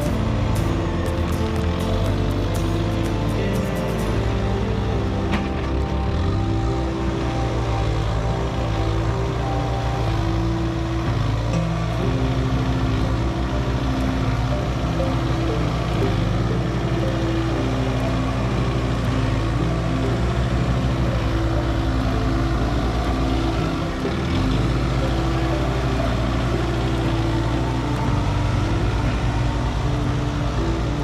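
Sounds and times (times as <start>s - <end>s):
road noise: 0.0s - 31.0s
vehicle engine running: 0.0s - 31.0s.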